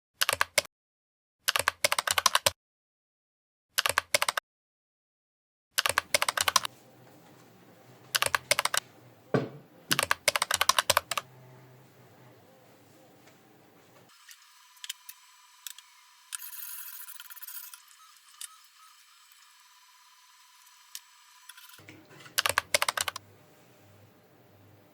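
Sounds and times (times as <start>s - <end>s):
computer keyboard typing: 1.5s - 2.6s, 3.8s - 4.4s, 5.8s - 6.7s, 8.1s - 8.8s, 9.9s - 11.3s, 21.6s - 23.2s.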